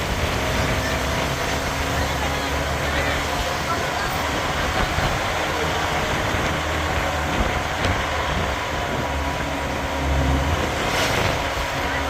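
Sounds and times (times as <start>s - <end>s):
vehicle rumble and hiss: 0.0s - 12.0s.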